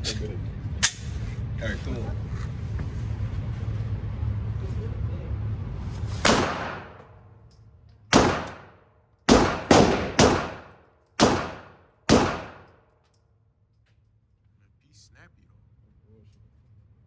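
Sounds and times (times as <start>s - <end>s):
handgun shots with echo: 6.2s - 7.1s, 8.1s - 12.8s.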